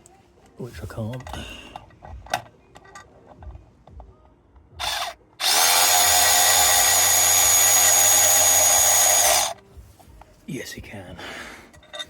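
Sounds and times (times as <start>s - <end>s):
cordless power tool whining: 4.8s - 9.6s.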